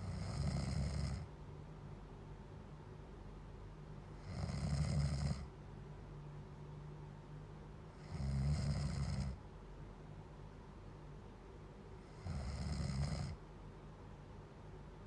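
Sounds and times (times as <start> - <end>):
loud snoring: 0.0 - 1.3, 4.2 - 5.5, 8.0 - 9.4, 12.0 - 13.4.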